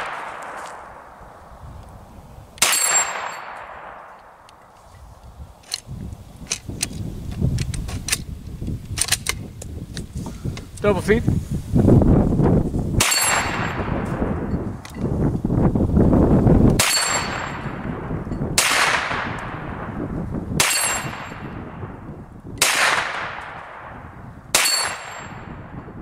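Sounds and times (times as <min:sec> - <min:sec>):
gunshots with long echo: 0:00.0 - 0:01.6, 0:02.6 - 0:04.5, 0:13.0 - 0:14.5, 0:16.8 - 0:22.0, 0:22.6 - 0:25.9
low rumbling noise: 0:00.0 - 0:24.5.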